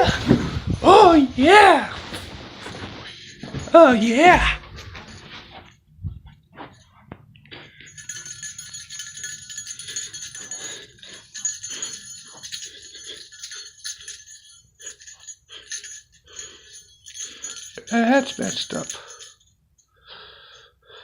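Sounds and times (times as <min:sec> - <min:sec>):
jingle bells shaken: 0:02.0 - 0:05.4, 0:07.6 - 0:19.6.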